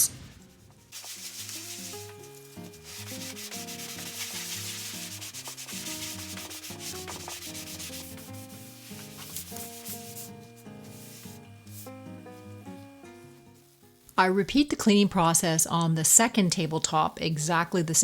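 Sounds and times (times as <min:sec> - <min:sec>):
light background music: 0:00.0 - 0:18.0
scouring pad scrubbing wood: 0:01.0 - 0:12.0.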